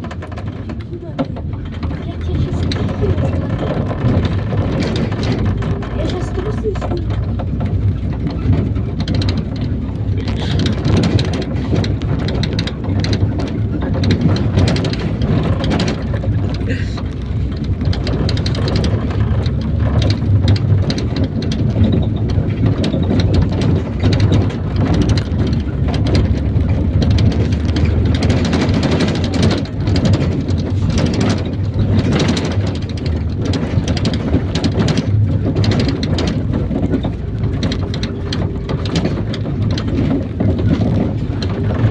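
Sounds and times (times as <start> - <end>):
engine and road rumble: 0.0 - 41.9
vehicle body rattling: 0.0 - 41.9.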